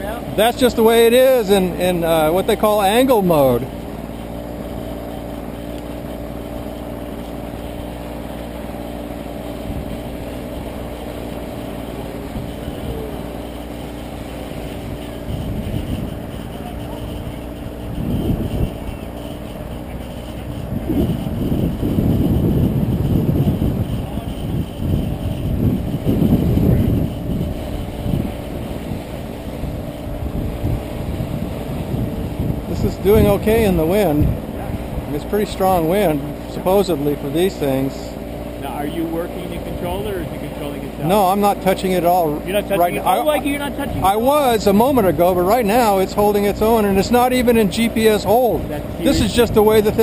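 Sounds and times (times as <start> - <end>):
quadcopter motors humming: 0.0 - 50.0
wind rumbling on microphone: 9.5 - 36.8, 43.8 - 50.0.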